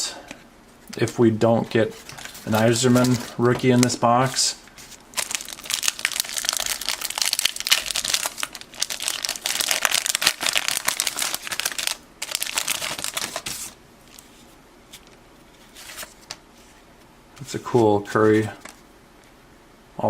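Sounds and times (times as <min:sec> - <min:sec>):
wrapper crinkling and tearing: 0:02.0 - 0:04.0, 0:05.1 - 0:14.3.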